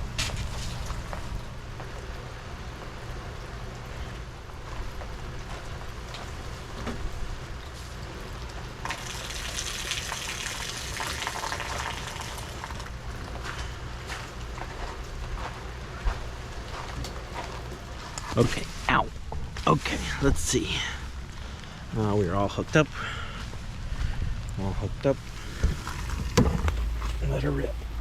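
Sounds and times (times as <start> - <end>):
heavy rain falling: 0.0 - 13.4
rush of water: 0.3 - 13.4, 25.2 - 27.7.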